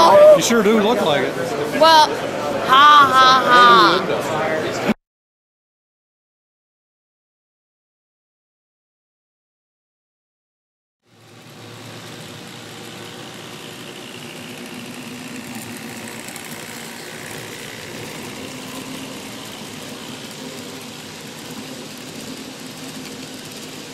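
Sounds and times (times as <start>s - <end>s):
faint high motor whine: 11.1s - 23.9s
motor humming: 11.1s - 23.9s.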